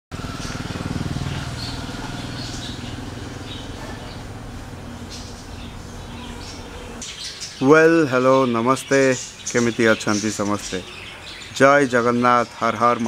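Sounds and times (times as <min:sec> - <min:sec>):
engine running with fast pulse: 0:00.1 - 0:07.0
faint bird chirps: 0:05.0 - 0:12.6.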